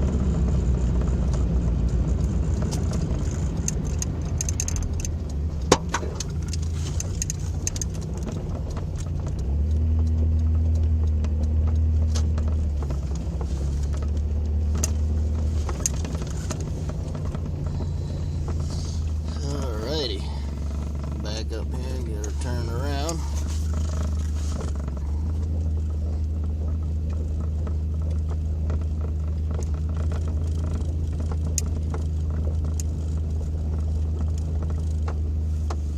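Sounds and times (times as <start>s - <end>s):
light ticks and rattles: 0.0s - 35.9s
pickup truck engine humming: 0.0s - 35.9s.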